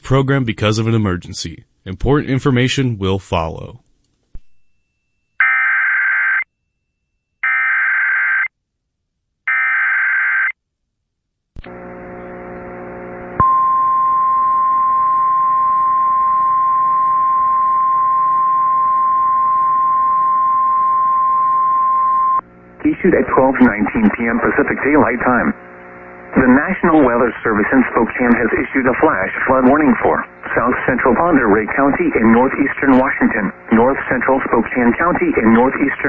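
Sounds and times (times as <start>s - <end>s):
low buzzing hum: 11.6s - 36.0s
steady attention tone: 11.6s - 36.0s.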